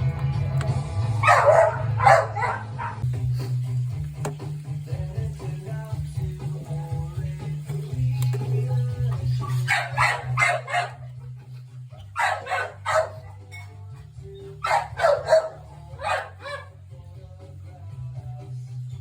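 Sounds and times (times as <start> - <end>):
background music: 0.0 - 19.0
dog barking: 1.2 - 3.0, 9.4 - 11.2, 12.0 - 13.4, 14.6 - 16.8.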